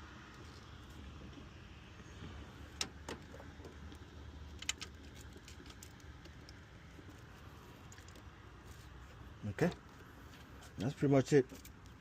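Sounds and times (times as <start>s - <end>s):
connectors clicking into place: 4.5s - 6.3s.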